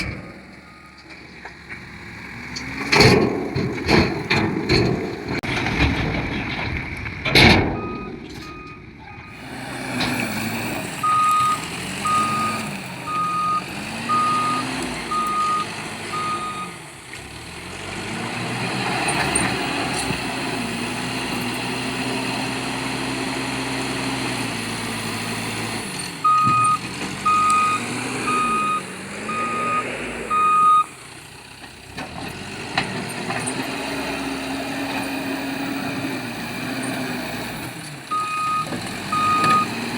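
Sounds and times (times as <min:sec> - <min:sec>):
diesel engine revving: 0:00.0 - 0:39.9
reversing alarm beeping: 0:00.2 - 0:01.0, 0:07.8 - 0:09.4, 0:11.0 - 0:16.8, 0:26.2 - 0:31.0, 0:38.1 - 0:39.8.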